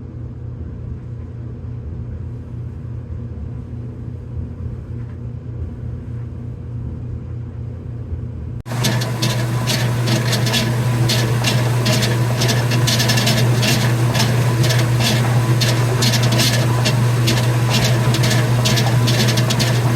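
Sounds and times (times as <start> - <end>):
washer low hum: 2.0 - 19.9
rhythmic scraping of drive pulley: 8.7 - 19.9.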